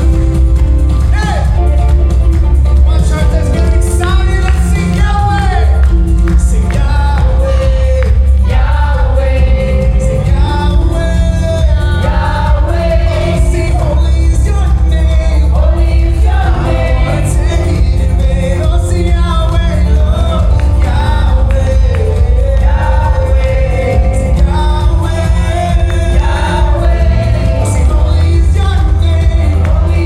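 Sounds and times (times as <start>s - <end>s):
heavy steady bass: 0.0s - 30.0s
worship band playing: 0.0s - 30.0s
people singing: 3.0s - 30.0s.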